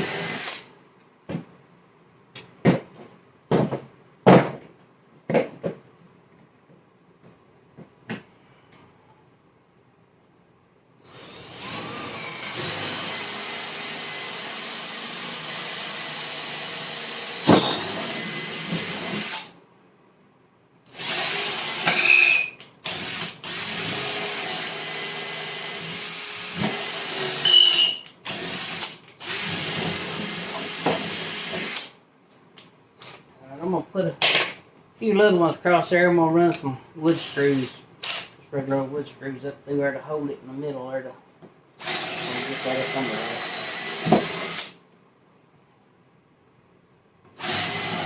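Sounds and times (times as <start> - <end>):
power drill boring into wood: 0.0 - 0.6, 11.1 - 19.5, 21.0 - 32.0, 41.8 - 44.8, 47.4 - 48.0.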